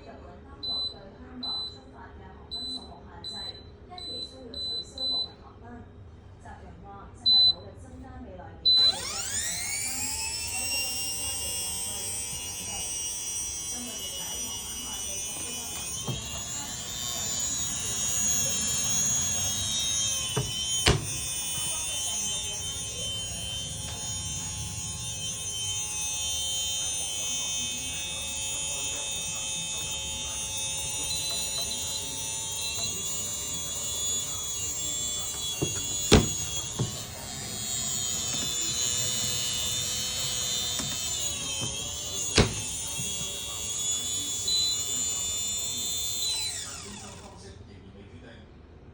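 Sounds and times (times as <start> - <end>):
small electric motor whining: 8.6 - 47.5.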